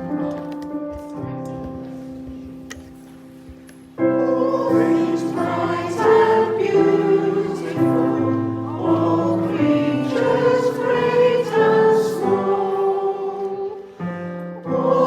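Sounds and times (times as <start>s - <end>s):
congregation singing a hymn: 4.0s - 15.0s.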